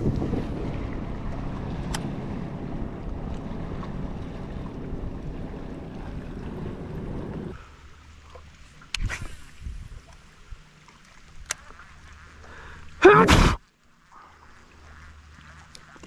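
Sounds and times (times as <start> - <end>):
wind on microphone: 0.0 - 7.6, 9.0 - 10.1
boat motor rumble: 0.0 - 13.6
water noise: 0.0 - 16.0.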